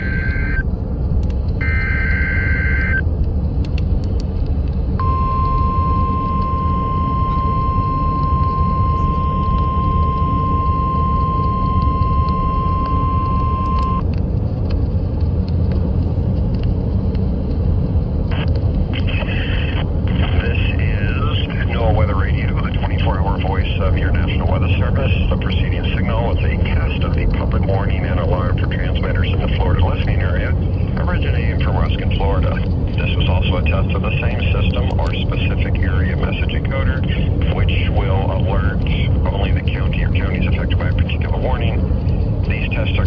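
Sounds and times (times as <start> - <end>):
radio static: 0.0 - 0.6, 1.6 - 3.0, 5.0 - 14.0, 18.3 - 41.9, 42.5 - 43.0
steady warning alarm tone: 0.0 - 0.7, 1.6 - 3.0, 5.0 - 14.0.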